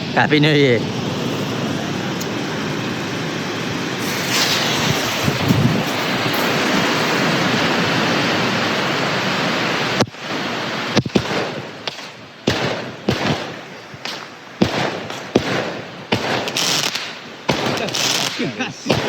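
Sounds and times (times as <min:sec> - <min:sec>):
hiss of burning firework: 0:01.0 - 0:19.0
sharp firework bangs: 0:04.0 - 0:07.3, 0:10.9 - 0:19.0.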